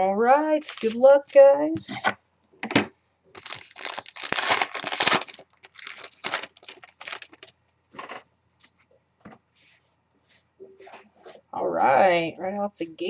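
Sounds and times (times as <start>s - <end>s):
card pack wrapper tearing: 0.6s - 1.0s, 3.4s - 7.5s
wrapper crinkling: 0.6s - 1.1s, 3.3s - 8.2s.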